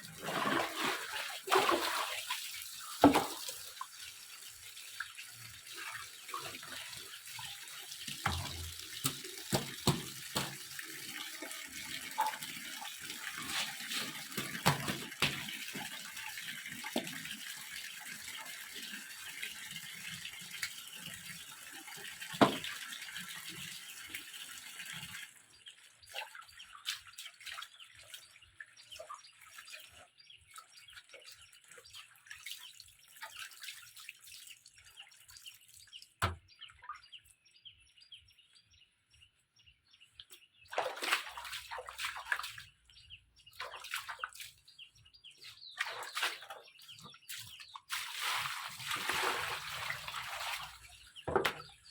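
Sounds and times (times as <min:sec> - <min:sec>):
water running from a tap: 0:00.0 - 0:25.4.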